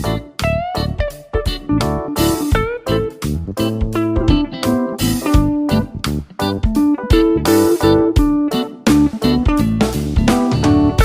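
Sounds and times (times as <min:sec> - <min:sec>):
guitar-led music with steady beat: 0:00.0 - 0:11.0.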